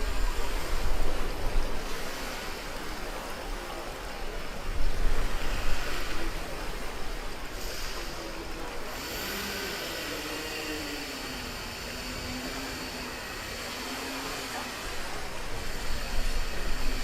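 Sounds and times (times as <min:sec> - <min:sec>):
water rushing: 0:00.0 - 0:17.0.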